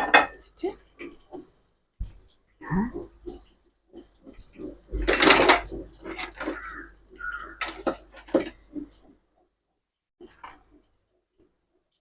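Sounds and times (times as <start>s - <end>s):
metal pots clattering: 0.0s - 1.2s, 4.2s - 9.0s.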